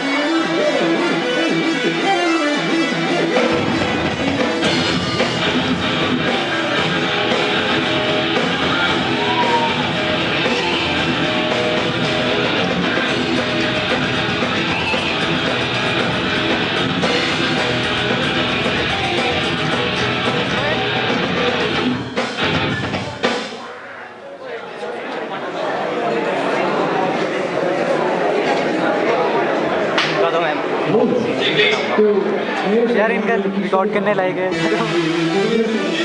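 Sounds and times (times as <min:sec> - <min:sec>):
electric guitars: 0:00.0 - 0:23.5, 0:34.5 - 0:36.0
heavy metal band playing live: 0:00.0 - 0:23.7, 0:34.5 - 0:36.0.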